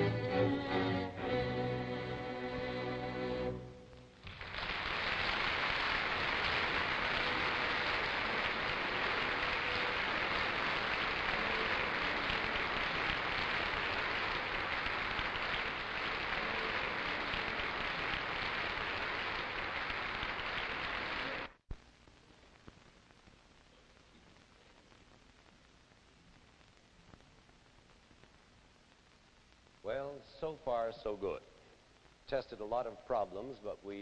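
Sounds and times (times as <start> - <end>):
audience applauding: 3.0 - 21.6.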